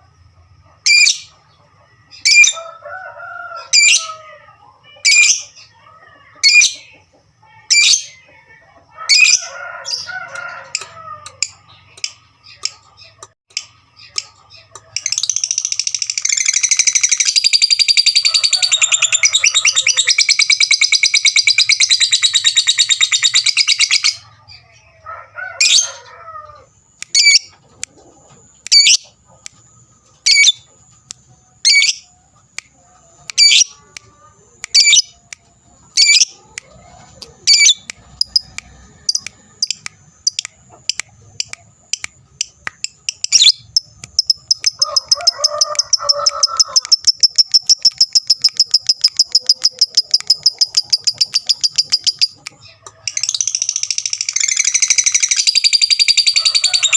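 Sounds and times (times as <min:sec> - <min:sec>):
sharp high bird chirps: 0:10.8 - 0:24.7, 0:27.0 - 0:27.6, 0:28.7 - 0:29.6, 0:30.2 - 0:32.1, 0:33.3 - 0:33.8, 0:34.6 - 0:35.2, 0:35.9 - 0:36.4, 0:37.4 - 0:56.9
bird chattering trill: 0:11.3 - 0:24.2, 0:27.0 - 0:27.5, 0:28.7 - 0:29.1, 0:30.2 - 0:30.6, 0:31.6 - 0:32.1, 0:33.3 - 0:33.8, 0:34.7 - 0:35.2, 0:35.9 - 0:36.4, 0:37.2 - 0:56.9.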